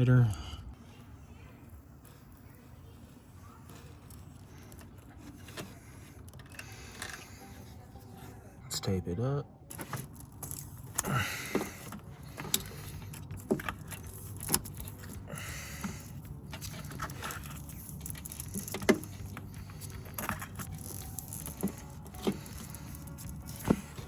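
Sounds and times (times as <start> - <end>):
steady low hum: 0.0 - 24.0
tape tearing rustle: 9.7 - 24.0.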